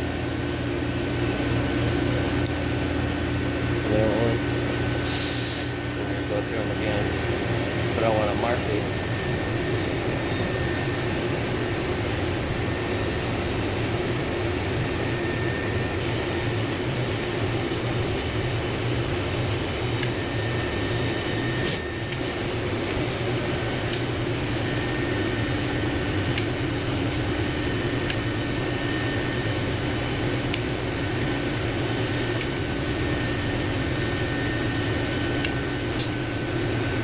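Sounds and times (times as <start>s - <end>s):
fan humming and rushing: 0.0s - 37.0s
sharp click: 35.4s - 36.2s.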